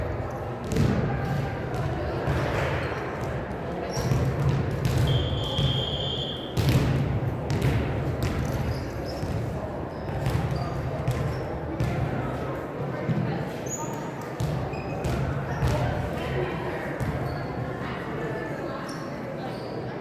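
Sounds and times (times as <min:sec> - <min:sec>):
crowd chatter: 0:00.0 - 0:20.0
sneaker squeaks: 0:03.9 - 0:06.8, 0:08.2 - 0:11.9, 0:13.6 - 0:15.9, 0:17.0 - 0:17.7, 0:18.8 - 0:20.0
referee's whistle: 0:05.0 - 0:06.6.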